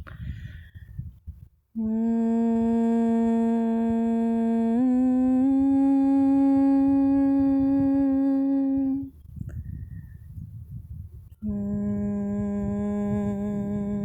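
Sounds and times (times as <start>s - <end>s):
woman holding long vocal note: 1.8s - 9.1s, 11.4s - 14.0s.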